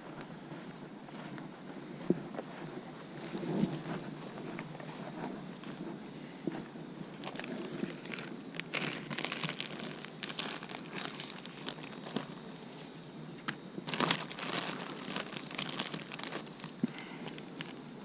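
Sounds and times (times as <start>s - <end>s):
paper or plastic crinkling: 7.2s - 12.4s, 13.8s - 17.8s.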